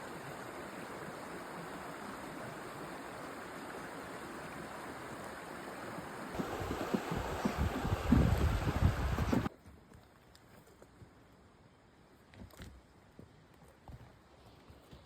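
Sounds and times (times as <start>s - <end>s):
mountain stream rushing: 0.0s - 9.5s
low gusts: 6.4s - 9.5s.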